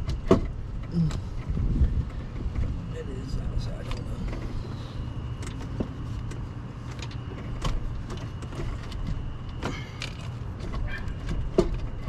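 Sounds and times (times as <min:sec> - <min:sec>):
low rumble: 0:00.0 - 0:07.2.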